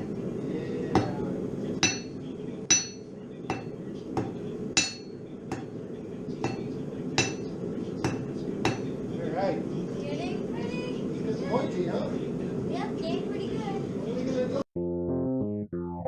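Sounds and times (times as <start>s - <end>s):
hammer striking steel on anvil: 1.0s - 1.2s, 1.8s - 5.8s, 6.4s - 9.0s.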